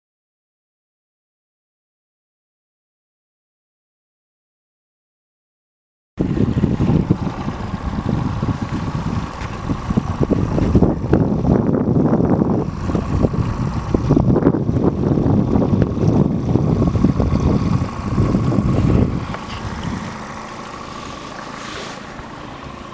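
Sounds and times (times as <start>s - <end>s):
faint engine whine: 6.2s - 22.9s
outboard motor running: 6.2s - 22.9s
wind buffeting microphone: 6.2s - 22.9s.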